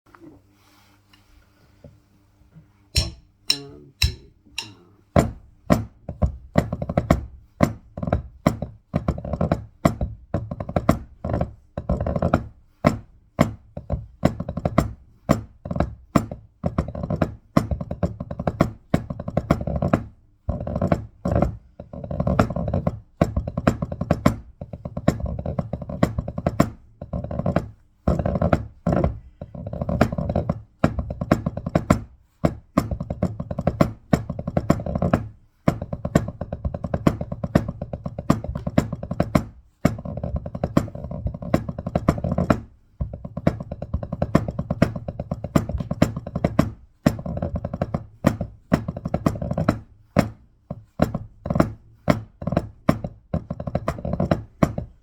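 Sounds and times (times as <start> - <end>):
snare drumming: 3.0 - 4.9.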